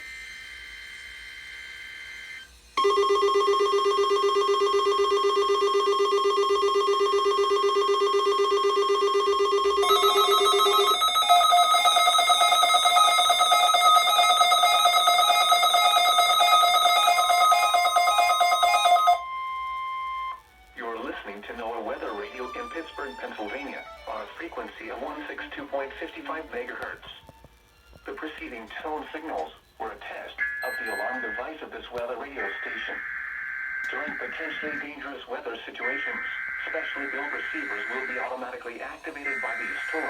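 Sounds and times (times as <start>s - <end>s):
wavering two-note alarm tone: 1.2s - 20.4s, 30.4s - 31.4s, 36.0s - 40.0s
data-burst tones: 2.8s - 19.2s, 30.4s - 40.0s.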